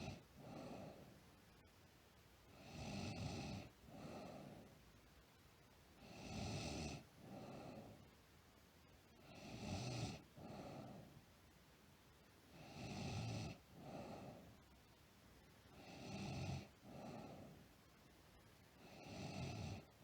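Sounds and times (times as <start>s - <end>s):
girl snoring: 2.6s - 4.6s, 6.0s - 7.9s, 9.3s - 11.0s, 18.8s - 19.9s.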